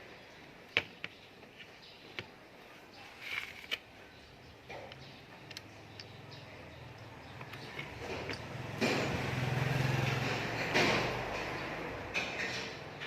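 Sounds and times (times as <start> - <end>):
small parts clicking and tapping: 4.9 - 9.1.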